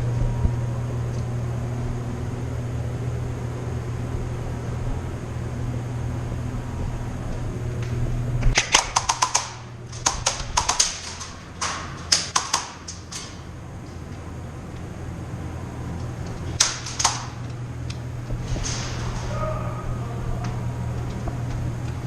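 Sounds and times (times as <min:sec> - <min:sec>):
low hum: 0:00.0 - 0:22.0
airsoft gun bursts: 0:08.6 - 0:13.3, 0:16.6 - 0:17.4.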